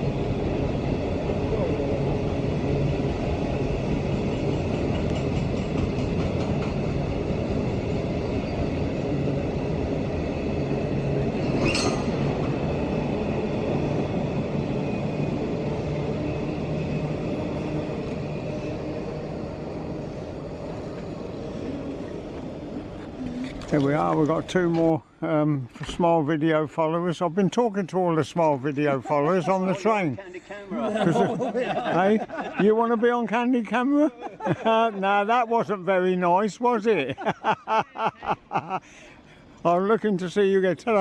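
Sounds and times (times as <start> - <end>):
train rumbling: 0.0 - 30.2
high squeal: 11.3 - 12.4.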